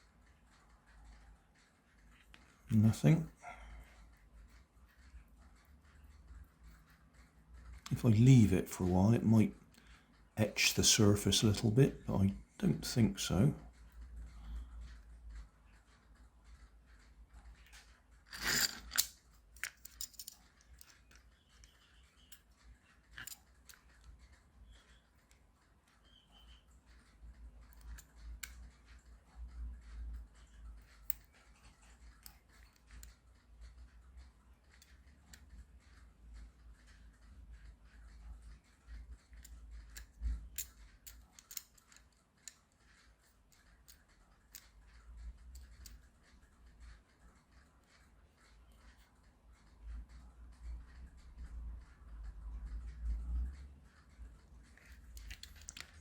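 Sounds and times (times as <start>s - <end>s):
small parts and tools clicking: 0.2s - 56.0s
small parts clicking on bench: 16.9s - 26.0s, 30.1s - 31.4s, 32.0s - 33.2s, 39.2s - 46.1s, 54.6s - 56.0s.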